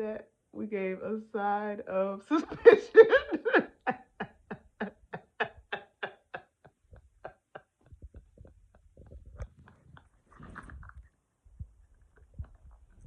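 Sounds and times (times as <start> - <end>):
woman laughing quietly: 2.5 - 10.3.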